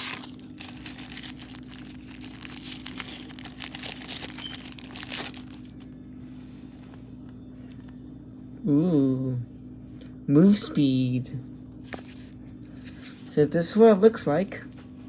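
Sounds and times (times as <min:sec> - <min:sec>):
plastic packaging crinkling and tearing: 0:00.0 - 0:06.0
low steady hum: 0:00.0 - 0:15.0.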